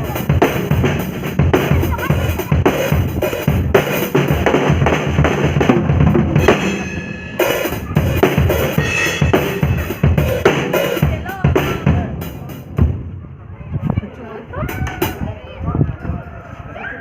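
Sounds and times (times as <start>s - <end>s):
drum kit playing: 0.0s - 13.2s.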